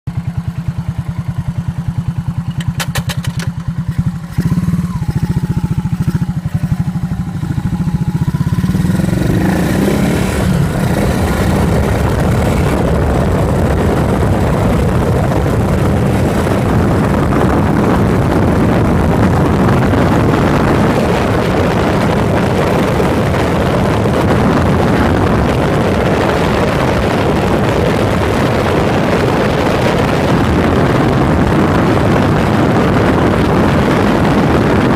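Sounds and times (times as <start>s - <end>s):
motorcycle engine thumping: 0.1s - 18.9s
wind noise: 0.1s - 34.9s.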